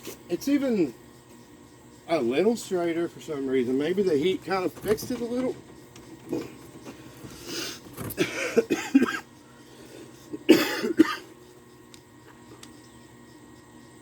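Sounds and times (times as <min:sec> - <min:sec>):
person coughing: 0:08.1 - 0:09.3, 0:10.3 - 0:11.3.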